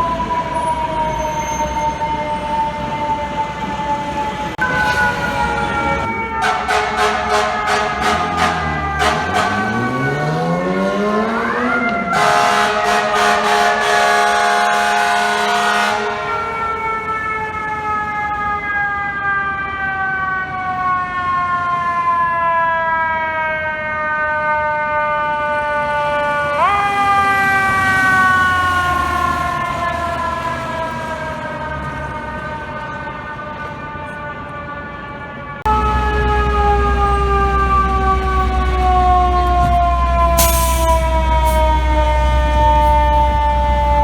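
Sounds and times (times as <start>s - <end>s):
fire truck siren: 0.0s - 44.0s
air horn blasting: 4.6s - 10.1s, 12.1s - 16.7s, 35.7s - 43.1s.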